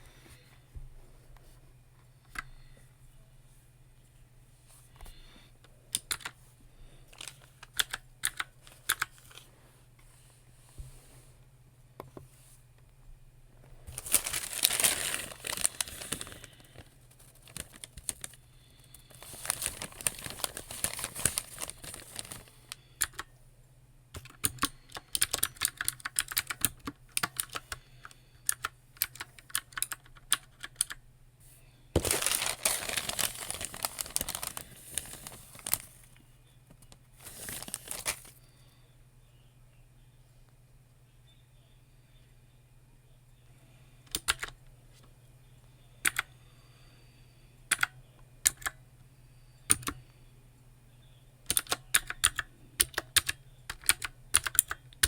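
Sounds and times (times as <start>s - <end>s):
faint low hum: 0.0s - 55.0s
paper crinkling: 13.9s - 22.8s, 32.0s - 36.2s, 36.8s - 38.4s
keyboard typing clicks: 24.2s - 27.7s, 51.5s - 54.8s.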